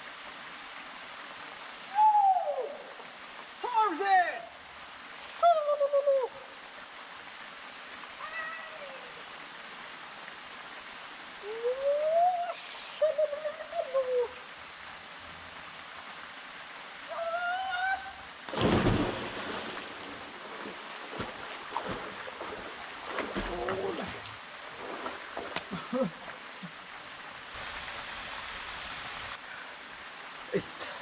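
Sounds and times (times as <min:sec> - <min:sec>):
man whooping: 0:01.9 - 0:02.9, 0:17.1 - 0:18.2
waterfall rushing: 0:11.4 - 0:29.8
loud splash into pool: 0:18.5 - 0:24.2.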